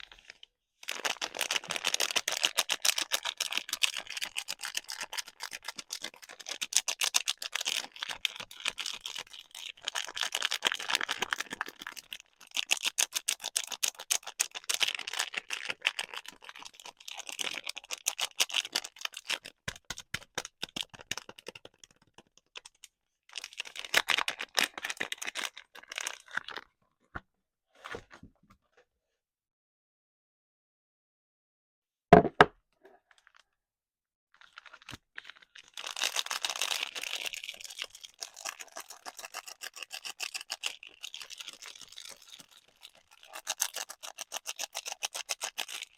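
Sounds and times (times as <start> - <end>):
packaging crinkling: 34.4 - 45.9.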